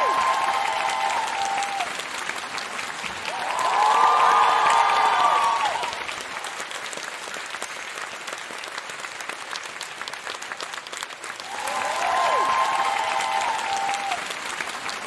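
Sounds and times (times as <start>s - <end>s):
crowd cheering: 0.0s - 6.8s, 11.2s - 15.0s
crowd applauding: 0.0s - 15.0s.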